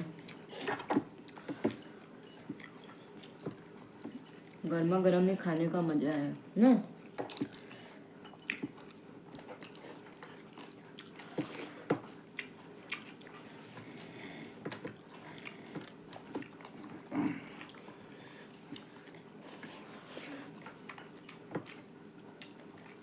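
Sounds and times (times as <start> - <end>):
chewing and lip smacking: 7.0 - 14.0, 18.6 - 23.0.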